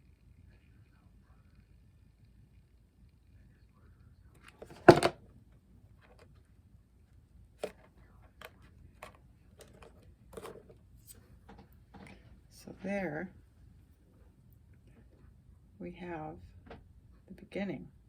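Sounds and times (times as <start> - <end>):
loud knock on table: 4.7 - 5.2.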